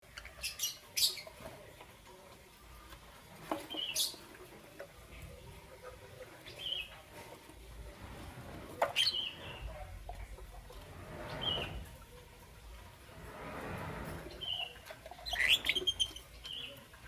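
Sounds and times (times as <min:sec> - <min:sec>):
birds giving high chirps: 0:03.7 - 0:04.3, 0:08.9 - 0:09.7, 0:14.2 - 0:16.9.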